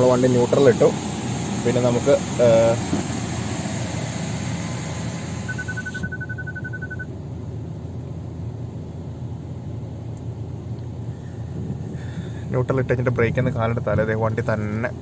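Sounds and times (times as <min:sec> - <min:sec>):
high beeps: 0:05.4 - 0:07.1.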